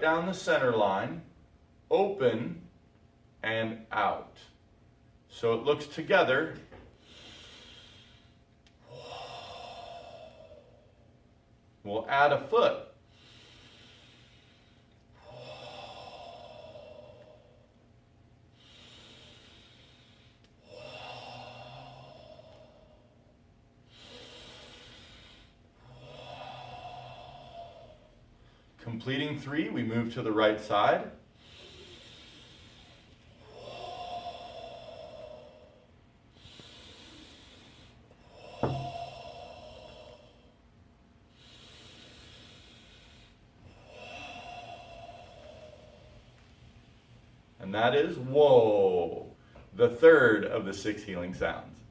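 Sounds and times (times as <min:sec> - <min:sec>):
soft breath: 0:06.6 - 0:11.2, 0:13.0 - 0:28.8, 0:31.2 - 0:49.8
breathy whoa exhale: 0:06.7 - 0:11.1, 0:13.3 - 0:17.8, 0:18.7 - 0:23.3, 0:23.9 - 0:28.7, 0:31.4 - 0:40.6, 0:41.4 - 0:46.4.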